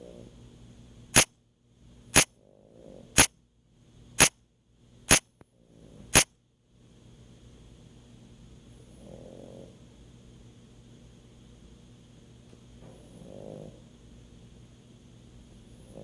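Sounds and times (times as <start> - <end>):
soft snoring: 0.0 - 0.4, 2.4 - 3.2, 8.8 - 9.8, 12.8 - 13.9, 15.6 - 16.0
sharp loud clicks: 1.1 - 1.4, 2.1 - 2.3, 4.2 - 4.4, 5.1 - 5.4, 6.1 - 6.3.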